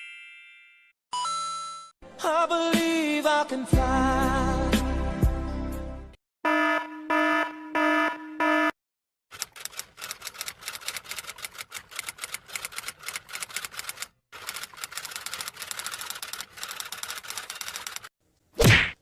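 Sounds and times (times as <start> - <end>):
typewriter keys clacking: 9.3 - 18.1.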